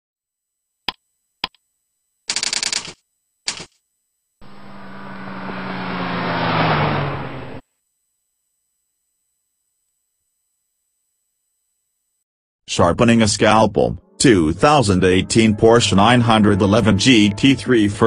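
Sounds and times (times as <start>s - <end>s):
sharp clicks: 2.2s - 3.8s
swelling pitched sound: 4.4s - 7.6s, 13.9s - 18.0s.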